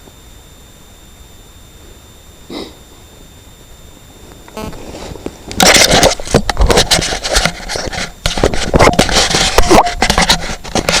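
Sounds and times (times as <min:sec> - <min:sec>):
scraping and rustling: 0:04.6 - 0:11.0.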